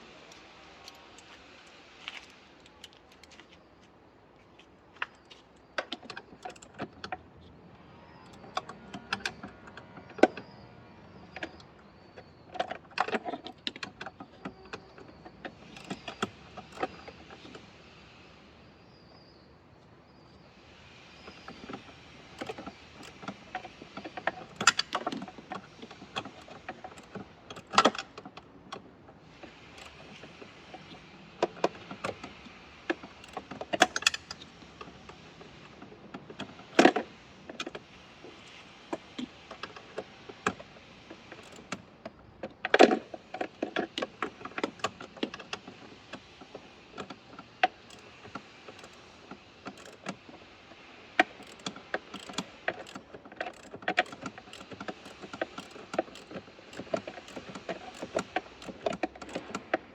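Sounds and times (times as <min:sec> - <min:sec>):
hand tools clicking and clanking: 0:05.8 - 0:07.6, 0:08.2 - 0:10.5, 0:11.4 - 0:17.6, 0:21.2 - 0:37.8, 0:39.0 - 0:59.9.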